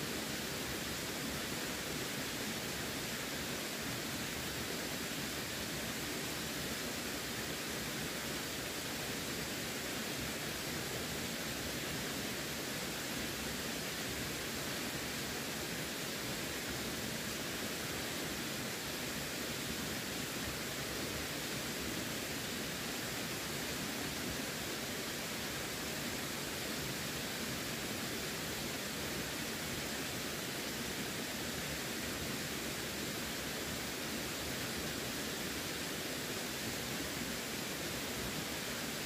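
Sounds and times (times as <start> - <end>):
running water rushing: 0.0 - 39.0.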